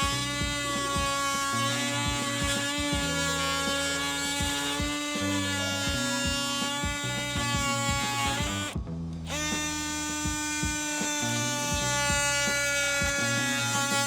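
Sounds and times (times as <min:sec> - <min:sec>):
background music with beat: 0:00.0 - 0:14.0
multi-tool high buzz: 0:00.0 - 0:14.0.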